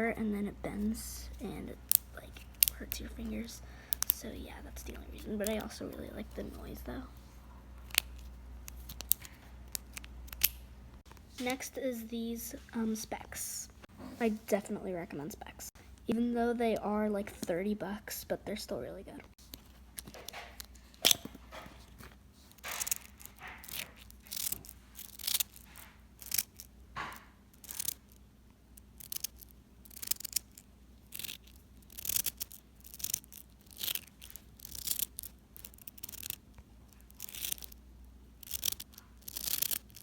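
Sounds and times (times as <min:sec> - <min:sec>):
magnets clicking and snapping: 0:01.8 - 0:07.0, 0:07.8 - 0:10.6, 0:22.5 - 0:37.8, 0:38.4 - 0:40.0.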